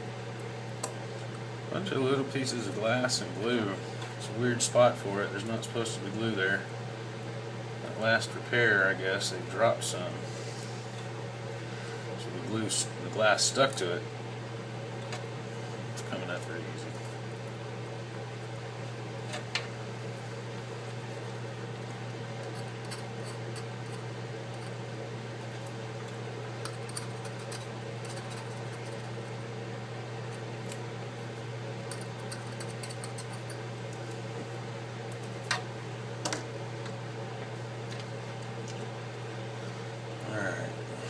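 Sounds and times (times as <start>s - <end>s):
steady low hum: 0.0s - 41.0s.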